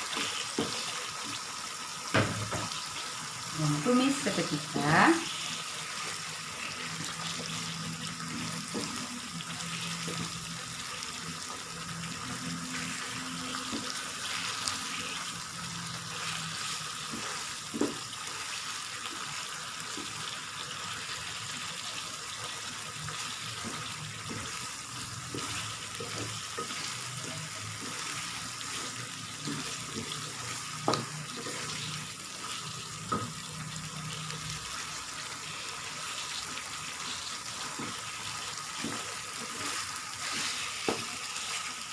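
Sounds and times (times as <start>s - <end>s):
fish sizzling in a pan: 0.0s - 41.9s.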